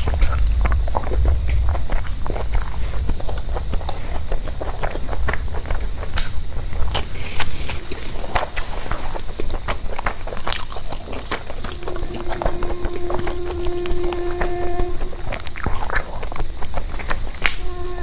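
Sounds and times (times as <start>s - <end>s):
steady tone: 0.0s - 16.8s
chewing and biting: 3.3s - 11.8s.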